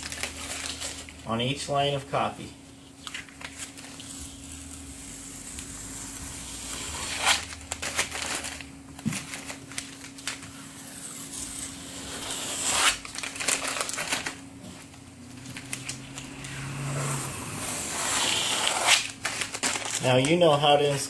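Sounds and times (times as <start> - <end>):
tape peeling with crackle: 6.6 - 16.6, 17.9 - 20.4.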